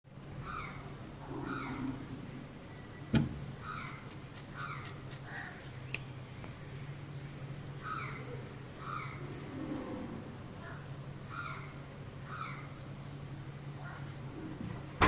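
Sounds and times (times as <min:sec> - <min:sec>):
steady low hum: 0:00.1 - 0:15.0
bird calling: 0:00.4 - 0:06.2, 0:07.8 - 0:12.9.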